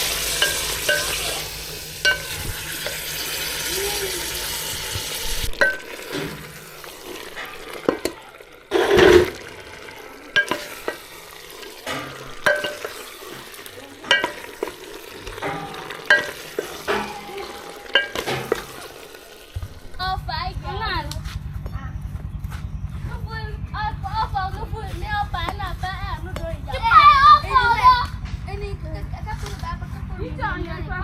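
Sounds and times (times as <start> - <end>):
spoon clinking against pot: 0.0 - 3.5, 5.5 - 19.4
food sizzling in a pot: 0.0 - 20.2.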